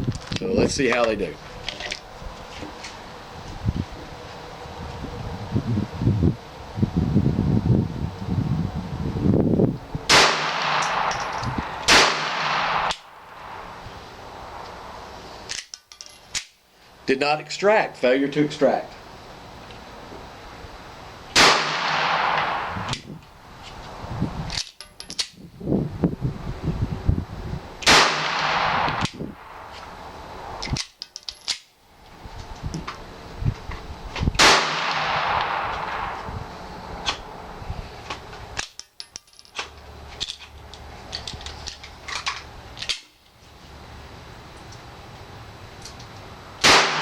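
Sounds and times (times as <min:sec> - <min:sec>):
pistol shots echoing: 0:10.1 - 0:13.6, 0:21.4 - 0:22.8, 0:27.8 - 0:29.5, 0:34.4 - 0:36.2, 0:46.6 - 0:47.0
metallic handling clicks: 0:15.5 - 0:16.6, 0:24.5 - 0:25.4, 0:30.6 - 0:31.7, 0:38.1 - 0:43.2.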